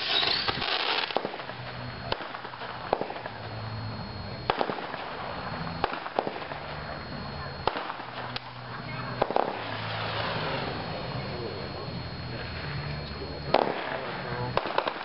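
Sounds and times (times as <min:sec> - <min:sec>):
firework bangs: 0:00.0 - 0:03.6, 0:04.4 - 0:11.0, 0:13.5 - 0:15.0
firework crackling burst: 0:00.0 - 0:03.7, 0:04.5 - 0:06.8, 0:07.6 - 0:11.0, 0:13.5 - 0:15.0.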